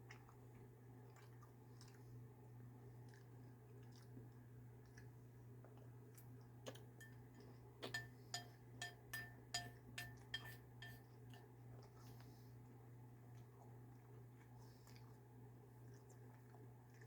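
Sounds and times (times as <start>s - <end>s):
low steady hum: 0.0s - 17.0s
metal spoon clinking against bowl: 7.0s - 11.5s.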